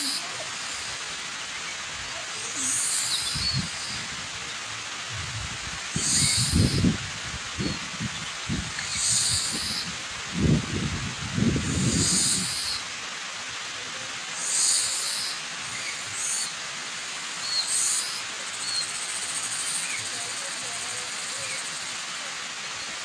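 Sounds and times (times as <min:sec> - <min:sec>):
waterfall rushing: 0:00.0 - 0:23.0
bird harsh calls: 0:02.6 - 0:04.1, 0:06.0 - 0:06.9, 0:08.8 - 0:09.9, 0:11.6 - 0:12.8, 0:14.4 - 0:16.6, 0:17.4 - 0:20.1.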